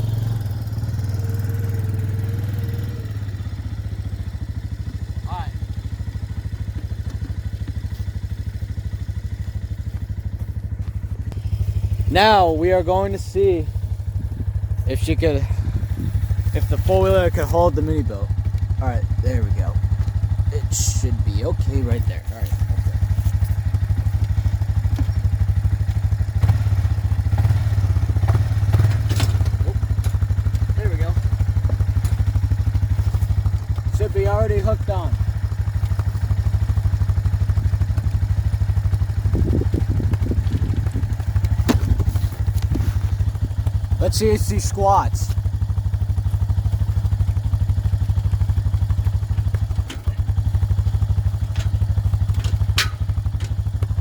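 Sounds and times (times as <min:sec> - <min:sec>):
four-wheeler engine idling: 0:00.0 - 0:54.0
trailer hitch clattering knocks: 0:41.4 - 0:42.8, 0:51.4 - 0:53.8.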